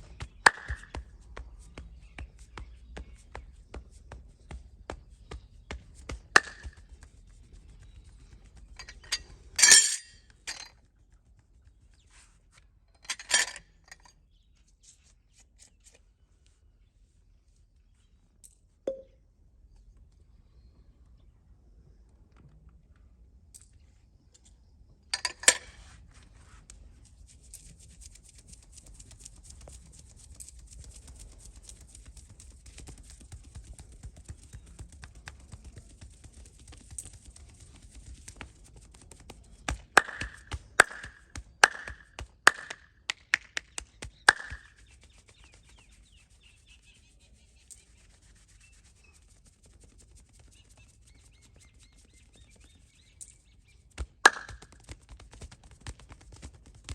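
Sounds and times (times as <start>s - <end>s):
hand strikes massage tapping: 39.7s - 44.7s
hands rubbing skin and hair: 43.4s - 51.8s.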